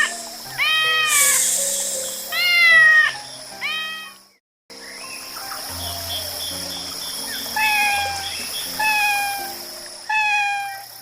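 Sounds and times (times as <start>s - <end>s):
cat meowing: 0.0s - 1.4s, 2.3s - 4.2s, 7.6s - 8.2s, 8.8s - 9.4s, 10.1s - 10.9s
background music: 0.0s - 10.7s.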